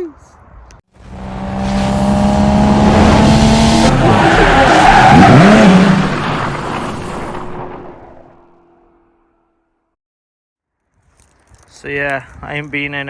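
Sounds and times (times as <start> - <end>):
tyres skidding: 1.0 - 9.2.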